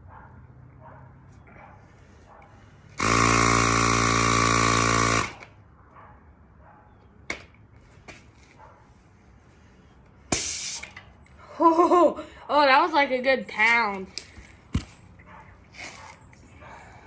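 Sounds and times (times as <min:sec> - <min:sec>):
tyre inflator motor buzzing: 0:03.0 - 0:05.5
air hissing from valve: 0:10.3 - 0:11.0.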